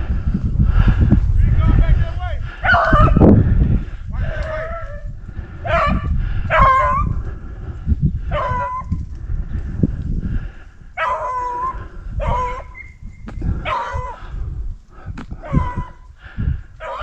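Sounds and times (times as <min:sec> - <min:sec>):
dogs baying: 0:02.6 - 0:03.2, 0:04.3 - 0:07.2, 0:08.3 - 0:08.9, 0:11.0 - 0:13.0, 0:13.6 - 0:14.2, 0:15.4 - 0:16.0, 0:16.8 - 0:17.0.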